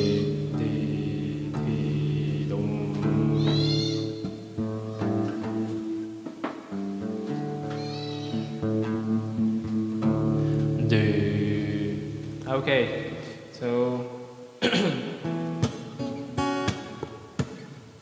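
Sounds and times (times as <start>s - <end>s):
high wavering cries: 0.0s - 0.4s, 3.3s - 4.2s, 7.7s - 8.8s
acoustic guitar chords: 0.0s - 18.0s.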